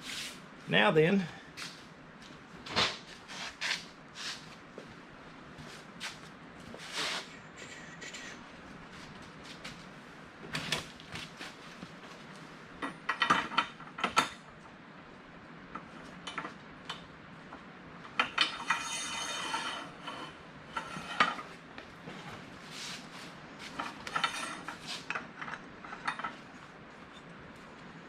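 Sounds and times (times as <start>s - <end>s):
metallic scrape: 18.5s - 21.4s.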